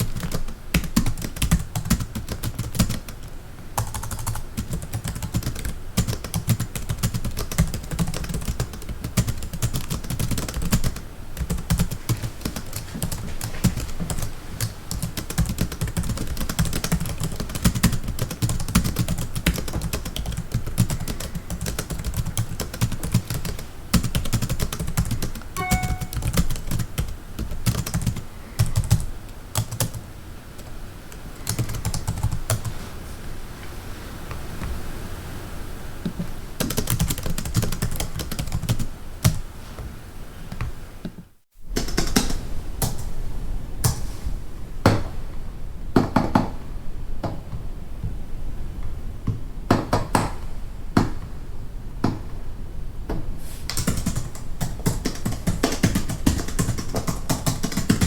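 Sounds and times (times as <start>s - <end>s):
fast typing on a keyboard: 0.0s - 30.0s, 31.4s - 32.7s, 36.6s - 39.4s, 41.8s - 43.0s, 53.7s - 58.0s.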